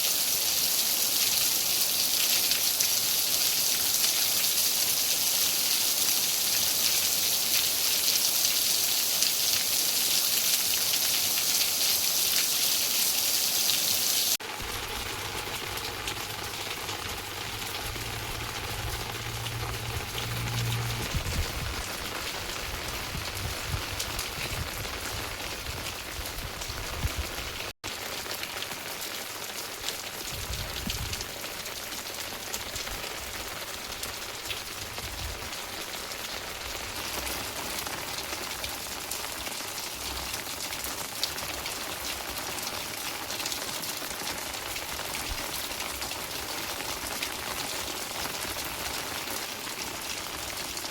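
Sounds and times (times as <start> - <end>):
heavy rain hissing: 0.0 - 25.4
low rumble: 17.0 - 22.0.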